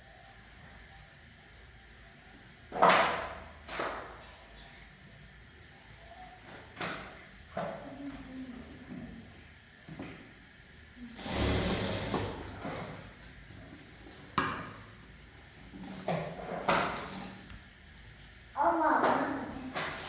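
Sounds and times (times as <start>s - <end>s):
sewing machine running: 11.1s - 12.9s.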